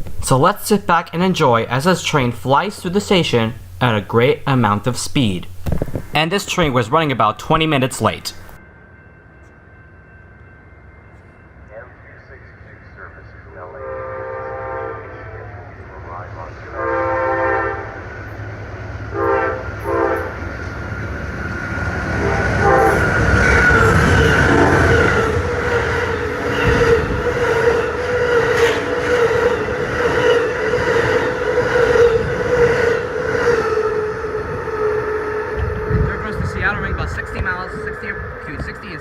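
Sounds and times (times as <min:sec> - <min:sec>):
rail clicks: 0:00.0 - 0:08.6, 0:20.2 - 0:34.4
train passing with rumble: 0:00.0 - 0:39.0
steady high tone: 0:06.2 - 0:18.4
train horn blasts: 0:13.5 - 0:15.5, 0:16.5 - 0:18.1, 0:19.1 - 0:20.5, 0:22.2 - 0:36.6.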